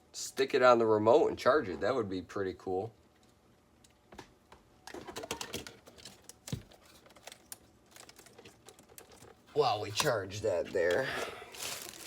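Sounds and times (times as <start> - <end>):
plastic parts clicking and rustling: 4.8 - 12.0.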